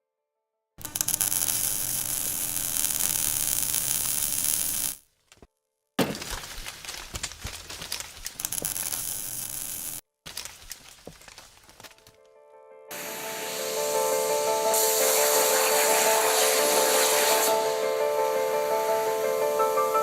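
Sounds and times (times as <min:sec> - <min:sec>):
cutting torch hissing and crackling: 0:00.8 - 0:05.0, 0:08.4 - 0:10.0, 0:12.9 - 0:20.0.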